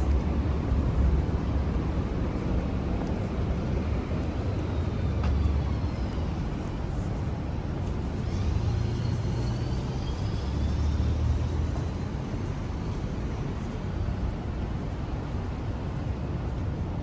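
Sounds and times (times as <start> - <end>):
road traffic rumble: 0.0 - 17.0
faint high whine: 3.6 - 15.4.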